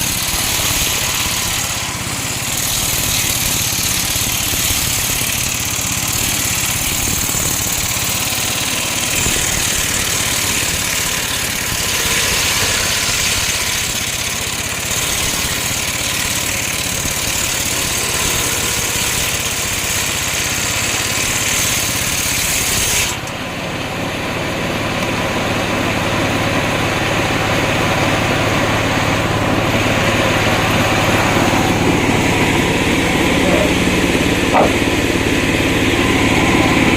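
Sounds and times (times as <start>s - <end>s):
engine running steadily: 0.0s - 36.9s
saw blade hissing: 6.0s - 23.3s.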